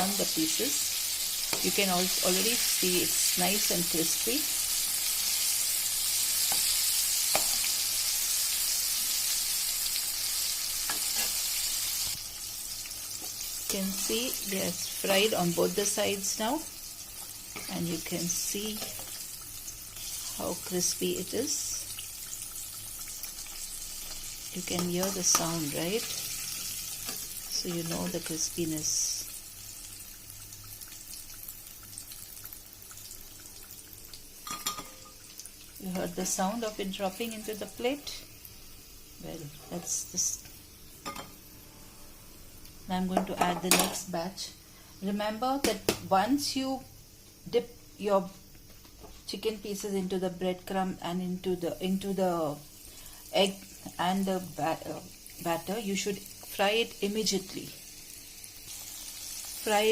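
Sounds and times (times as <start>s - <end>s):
chicken deep-frying in oil: 0.0s - 41.3s, 49.5s - 59.9s.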